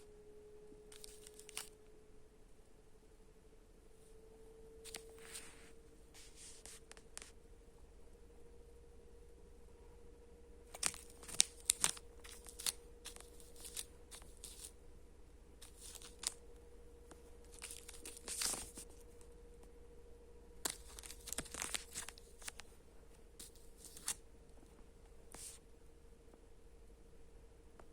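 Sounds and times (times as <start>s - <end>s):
candy wrapper crinkling: 0.9s - 1.7s, 4.9s - 5.4s, 10.7s - 14.8s, 15.6s - 16.4s, 17.1s - 19.1s, 20.6s - 22.7s, 23.4s - 24.2s.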